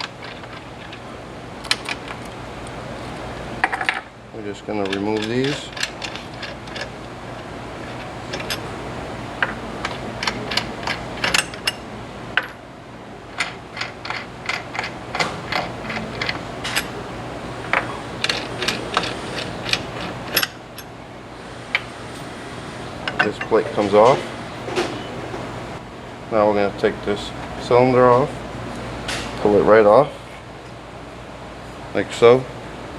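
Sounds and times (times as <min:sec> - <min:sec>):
low steady hum: 0:00.0 - 0:32.9
metal clicks and clinks: 0:04.8 - 0:06.9, 0:07.8 - 0:08.7, 0:09.4 - 0:11.8, 0:13.4 - 0:17.0, 0:17.6 - 0:20.9.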